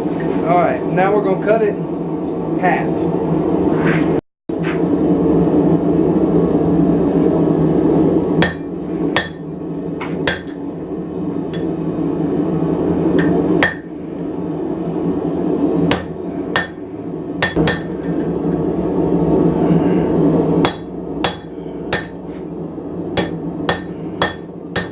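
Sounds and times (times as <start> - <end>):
steady low roar: 0.0 - 24.9
hammer striking steel on anvil: 8.4 - 10.8, 13.2 - 14.2, 15.9 - 18.3, 20.6 - 22.5, 23.2 - 24.9.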